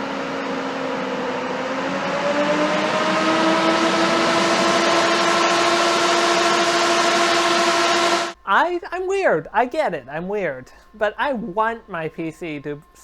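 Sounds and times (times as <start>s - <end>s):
cooling fans whining: 0.0s - 13.0s.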